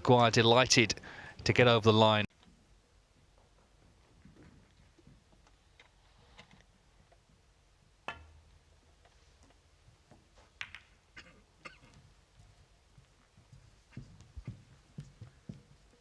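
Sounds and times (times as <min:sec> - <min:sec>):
snooker balls clicking: 0:10.2 - 0:12.0.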